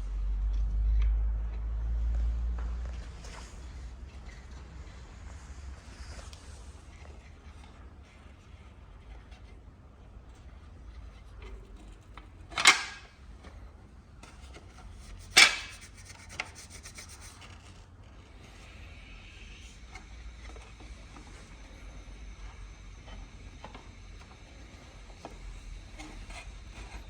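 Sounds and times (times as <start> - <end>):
short scraping rubs: 14.4 - 17.8.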